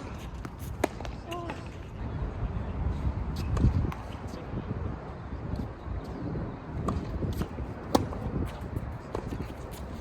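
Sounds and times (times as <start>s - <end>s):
wind buffeting microphone: 0.0s - 10.0s
tennis ball struck by rackets: 6.8s - 9.8s.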